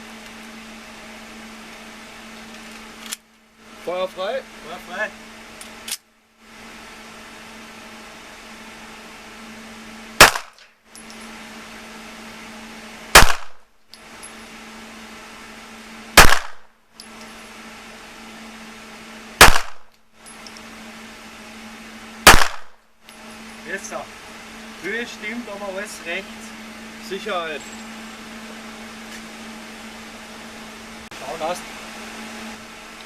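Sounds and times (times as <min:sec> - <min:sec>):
handgun shots: 0:10.2 - 0:10.7, 0:13.2 - 0:13.6, 0:16.2 - 0:16.7, 0:19.4 - 0:19.9, 0:22.3 - 0:22.8.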